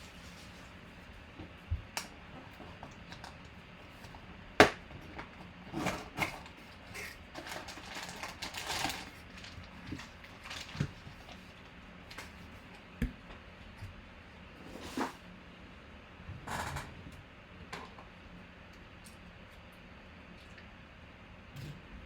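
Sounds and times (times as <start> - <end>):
packaging rustling: 6.4 - 11.4.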